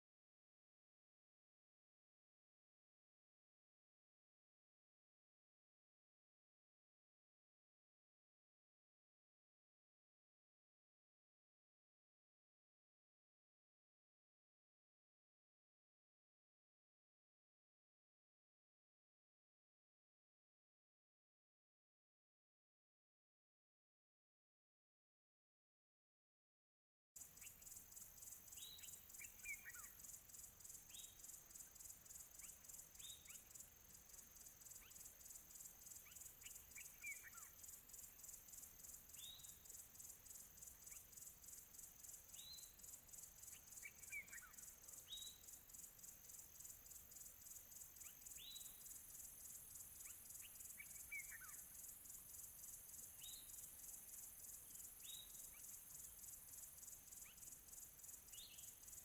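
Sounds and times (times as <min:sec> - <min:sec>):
high insect trill: 0:27.2 - 0:59.0.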